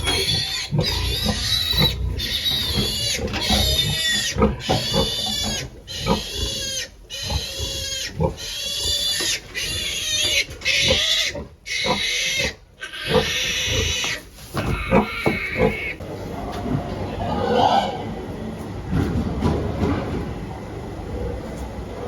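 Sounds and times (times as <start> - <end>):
pigs squealing: 0.0 - 16.0, 17.2 - 18.2.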